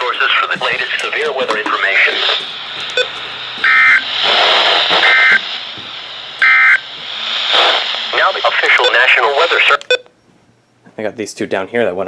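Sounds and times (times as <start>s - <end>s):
radio static hiss: 0.0s - 10.0s
two-tone digital data bursts: 1.8s - 5.5s, 6.4s - 10.0s.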